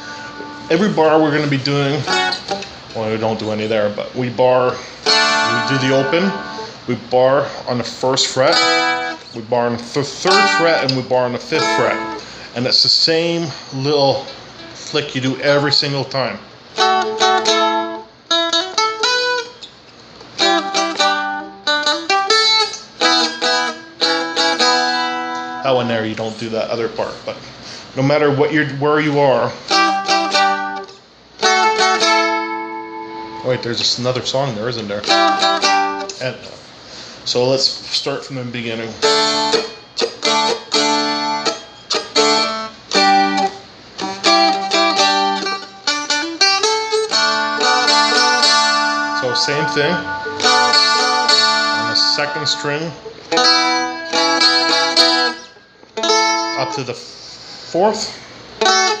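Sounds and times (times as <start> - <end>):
strum stick chords: 0.0 - 3.6, 5.0 - 12.5, 16.8 - 25.8, 29.2 - 33.8, 35.0 - 36.3, 39.0 - 56.9.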